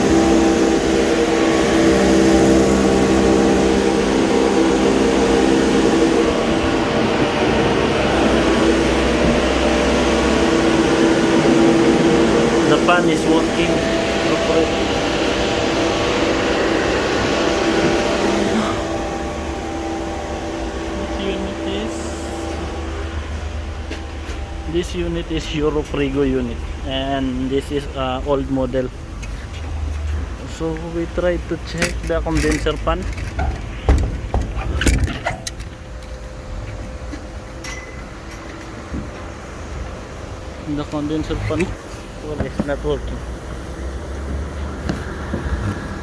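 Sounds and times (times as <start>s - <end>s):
fan rushing air: 0.0s - 46.0s
mechanical hum: 0.0s - 46.0s
metallic clinks and knocks: 31.8s - 36.2s.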